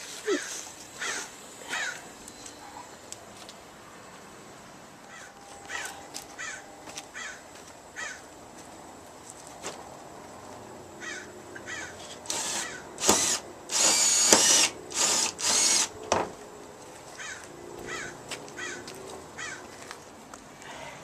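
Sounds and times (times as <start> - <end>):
crows cawing: 0.4 - 2.0, 5.1 - 7.4, 8.0 - 8.3, 11.0 - 12.0, 17.2 - 19.7
power drill whining bursts: 12.2 - 15.9.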